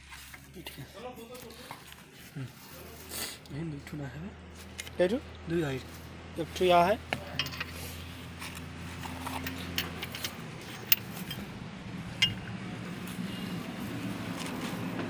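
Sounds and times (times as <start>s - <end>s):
steady low hum: 1.9s - 14.9s
sharp clicks and knocks: 12.2s - 12.5s.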